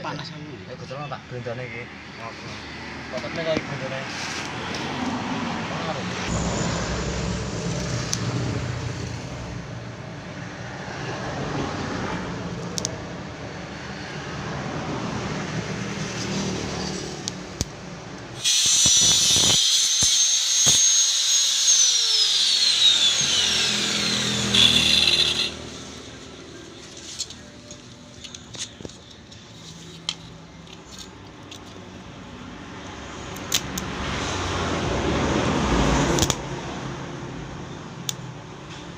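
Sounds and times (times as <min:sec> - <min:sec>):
steady background noise: 0:00.0 - 0:38.9
power tool whining: 0:18.4 - 0:27.6.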